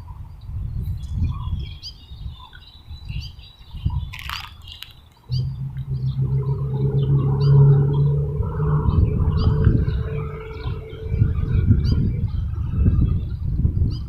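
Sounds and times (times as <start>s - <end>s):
steady low hum: 5.3s - 13.2s
low rumbling background: 5.3s - 13.4s.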